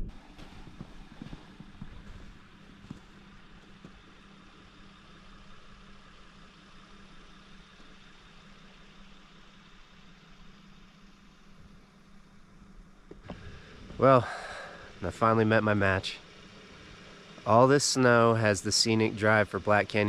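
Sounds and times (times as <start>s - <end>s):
faint vehicle engine hum: 0.0s - 20.0s.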